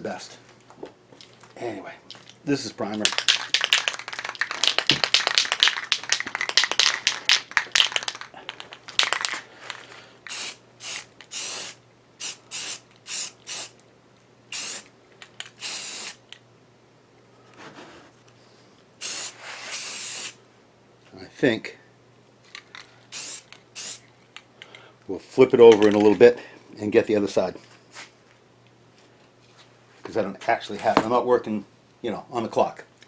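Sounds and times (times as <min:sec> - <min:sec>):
aerosol can ball rattling: 0:03.0 - 0:09.4
spray can hissing bursts: 0:10.3 - 0:13.8, 0:14.5 - 0:14.9, 0:15.6 - 0:16.2, 0:19.0 - 0:20.4, 0:23.1 - 0:24.0.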